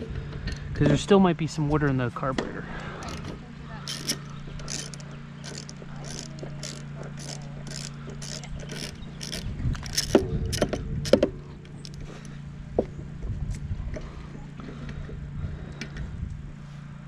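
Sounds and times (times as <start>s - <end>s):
steady low hum: 0.0s - 17.0s
hand tools clicking on metal: 3.0s - 12.3s.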